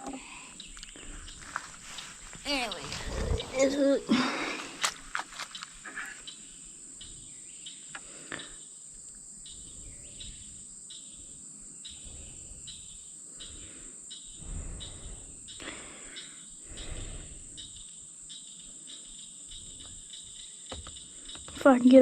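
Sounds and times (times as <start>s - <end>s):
crickets chirping: 0.0s - 22.0s
insect chorus buzzing: 0.0s - 22.0s
low rustling bumps: 1.1s - 5.4s.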